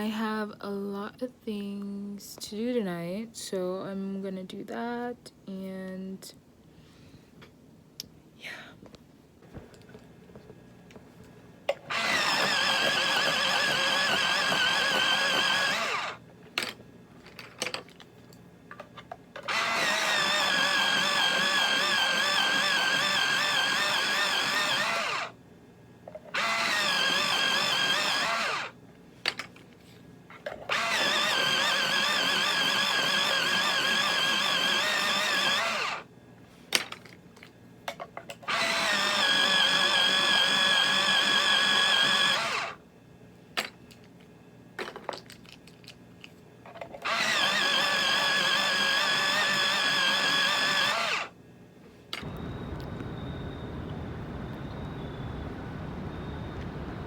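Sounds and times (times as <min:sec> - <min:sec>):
small electric motor whining: 0:11.9 - 0:16.2, 0:19.4 - 0:25.4, 0:26.3 - 0:28.8, 0:30.7 - 0:36.0, 0:38.5 - 0:42.8, 0:47.0 - 0:51.3, 0:52.2 - 0:57.0.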